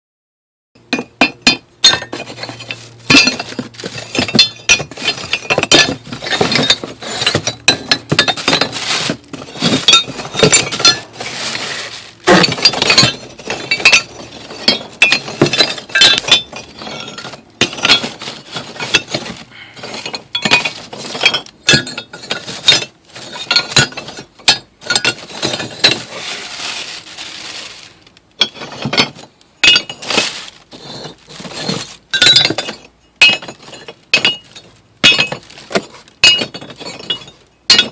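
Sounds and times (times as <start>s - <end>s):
charcoal sticks clinking together: 1.0s - 26.1s.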